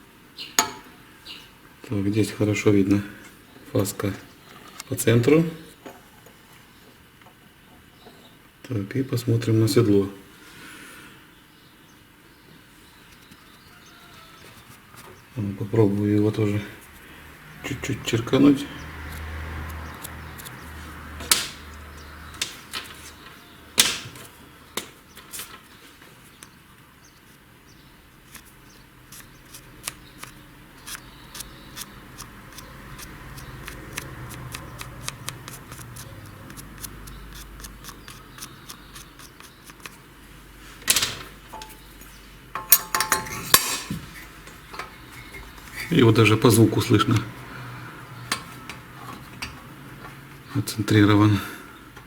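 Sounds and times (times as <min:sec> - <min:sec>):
valve seat cutter ticking and scraping: 0:19.0 - 0:20.8, 0:28.2 - 0:40.0.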